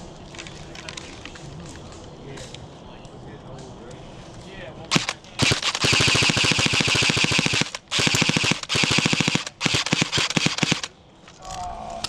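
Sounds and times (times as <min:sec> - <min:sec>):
airsoft rifle full-auto bursts: 0:04.9 - 0:11.0.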